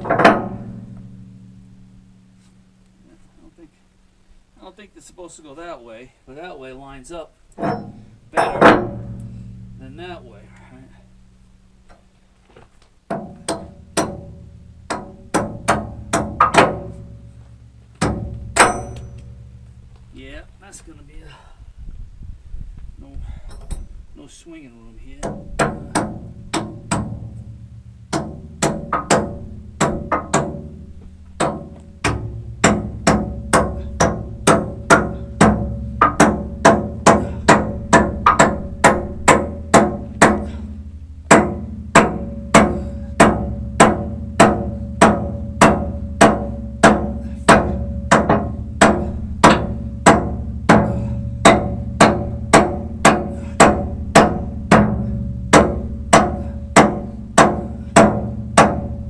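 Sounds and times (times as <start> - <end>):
steady low hum: 0.0 - 59.0
hammer striking steel: 7.6 - 10.1, 13.1 - 14.3, 14.9 - 17.0, 18.0 - 19.4, 28.1 - 30.8, 31.4 - 40.6, 41.3 - 59.0.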